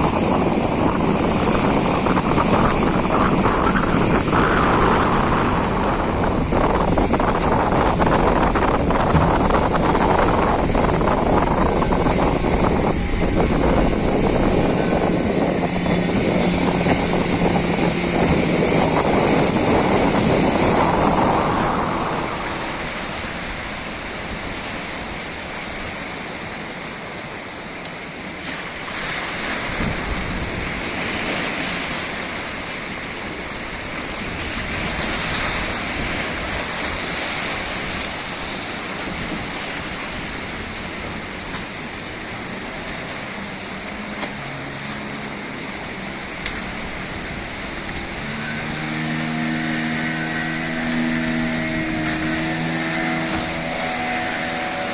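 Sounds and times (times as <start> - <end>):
wind buffeting microphone: 0.0 - 26.2, 29.0 - 54.9
heavy surf: 0.0 - 54.9.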